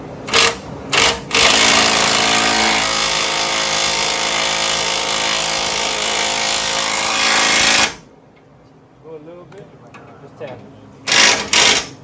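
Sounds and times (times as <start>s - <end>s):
impact wrench hammering: 0.3s - 8.0s, 11.1s - 12.0s.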